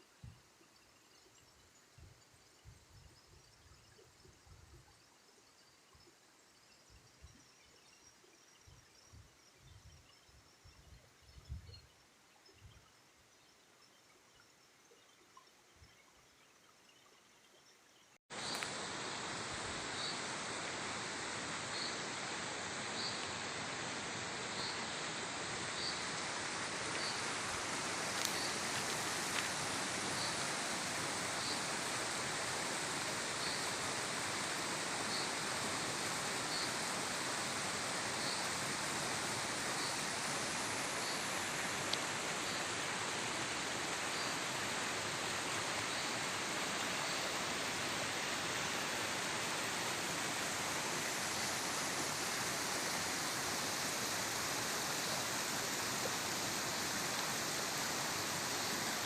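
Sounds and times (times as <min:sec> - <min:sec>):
river water rushing: 0:18.4 - 0:59.0.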